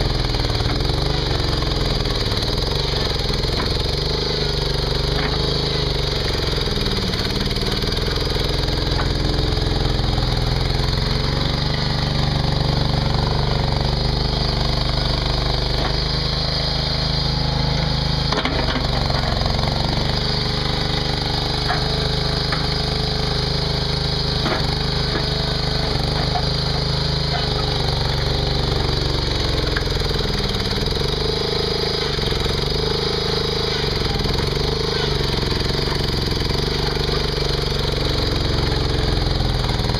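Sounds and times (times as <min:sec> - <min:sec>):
skid steer engine running: 0:00.0 - 0:39.9.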